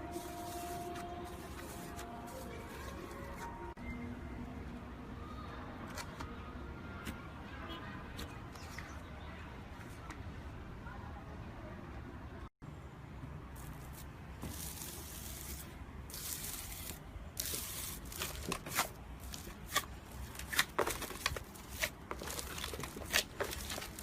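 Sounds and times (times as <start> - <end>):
slime squishing and crackling: 13.9 - 24.0.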